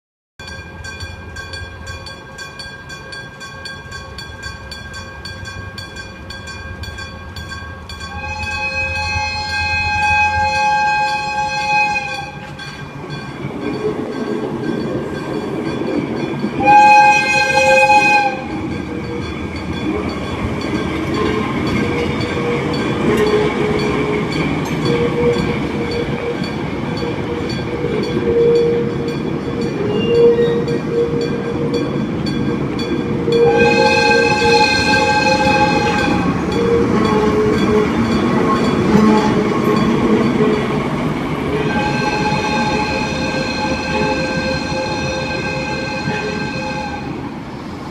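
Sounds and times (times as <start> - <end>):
railway crossing bell ringing: 0.4 - 47.1
train rumbling over rails: 0.4 - 47.9
diesel locomotive horn: 8.0 - 12.6, 16.6 - 19.2, 21.0 - 31.8, 33.0 - 40.8, 41.4 - 47.2.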